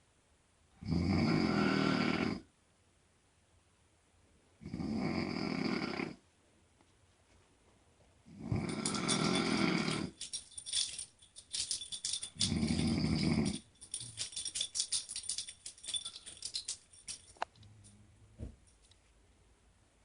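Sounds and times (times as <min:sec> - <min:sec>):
woman snoring with rattly crackle: 0:00.8 - 0:02.5, 0:04.6 - 0:06.2, 0:08.3 - 0:10.3, 0:12.4 - 0:13.6.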